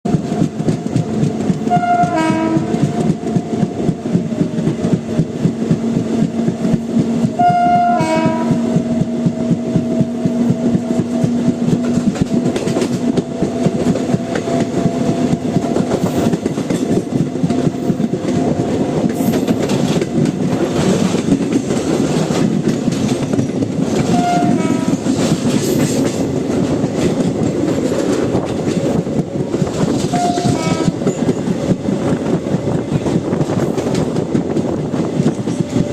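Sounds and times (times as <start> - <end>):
train wheels clattering on track: 0.0 - 35.9
locomotive horn: 1.6 - 3.1, 7.4 - 8.8, 24.0 - 25.1, 30.1 - 31.1.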